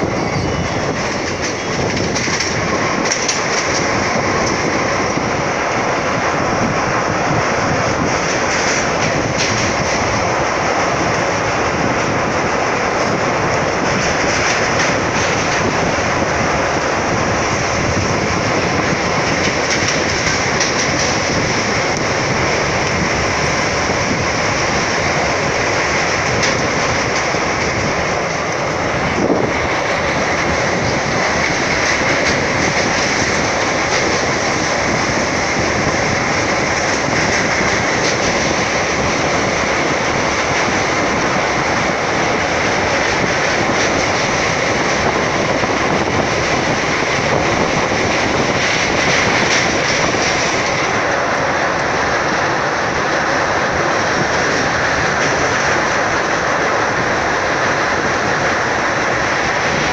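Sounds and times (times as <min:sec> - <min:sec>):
train running on rails: 0:00.0 - 0:59.9.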